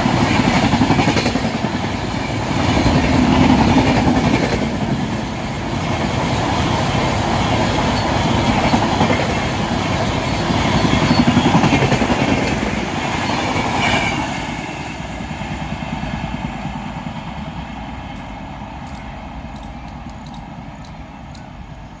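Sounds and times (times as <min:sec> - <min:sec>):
train wheels clattering: 0:00.0 - 0:22.0
light regular clicks: 0:18.2 - 0:21.5.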